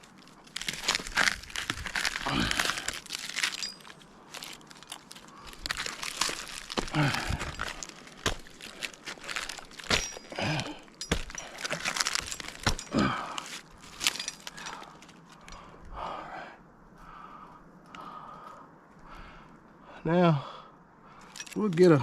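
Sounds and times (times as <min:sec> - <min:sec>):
climbing spurs cracking on bark: 0:00.0 - 0:15.8.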